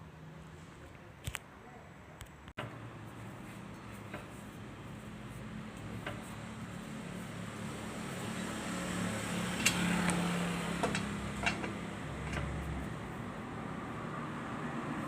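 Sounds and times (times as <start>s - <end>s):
sharp engine clicks: 9.5s - 12.8s.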